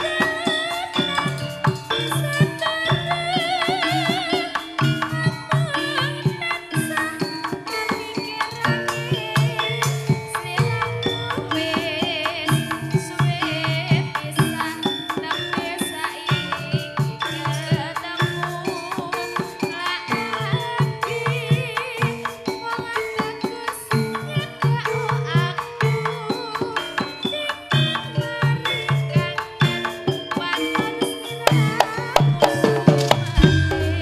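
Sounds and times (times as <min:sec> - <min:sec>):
wavering melodic line: 0:00.0 - 0:16.3
rapid hand-drum strokes: 0:00.0 - 0:34.0.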